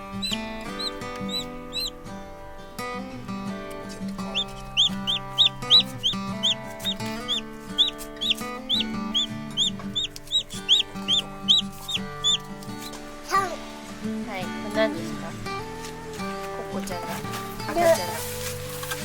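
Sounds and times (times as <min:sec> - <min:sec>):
chicks peeping: 0:00.0 - 0:02.0, 0:04.2 - 0:13.0
background music: 0:00.0 - 0:19.0.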